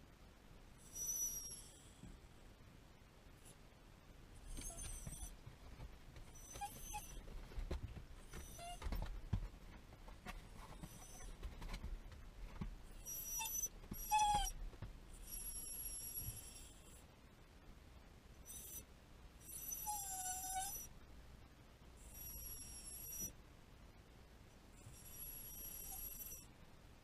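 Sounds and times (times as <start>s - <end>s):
dog whimpering: 0.9s - 1.8s, 4.4s - 5.4s, 6.3s - 7.2s, 8.3s - 9.0s, 10.8s - 11.3s, 13.0s - 14.6s, 19.4s - 20.9s, 24.9s - 26.4s.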